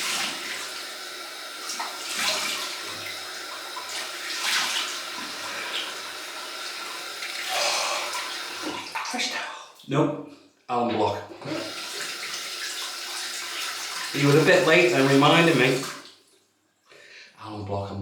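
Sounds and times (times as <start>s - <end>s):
water running from tap: 0.0s - 9.4s, 11.4s - 16.2s
water splashes: 1.6s - 6.2s, 7.2s - 10.0s, 10.7s - 16.2s.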